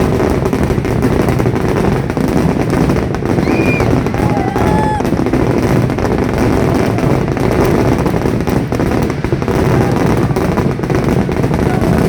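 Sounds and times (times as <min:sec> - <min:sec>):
firecrackers crackling: 0:00.0 - 0:12.0.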